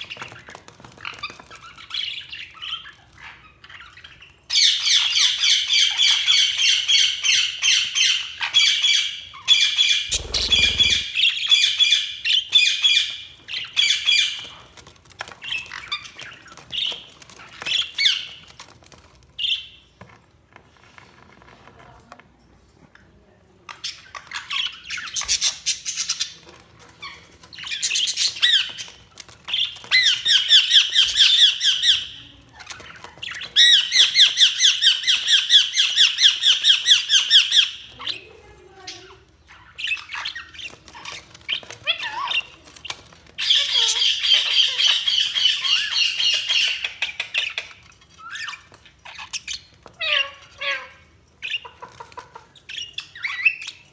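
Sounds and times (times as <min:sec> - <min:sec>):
budgerigars chattering and warbling: 0:10.1 - 0:11.3.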